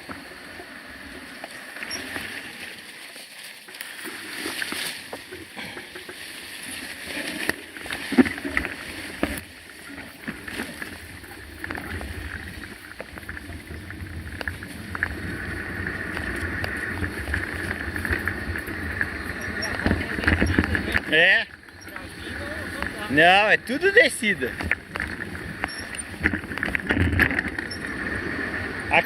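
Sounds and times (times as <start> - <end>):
bike tyres on dirt trail: 0.0 - 29.0.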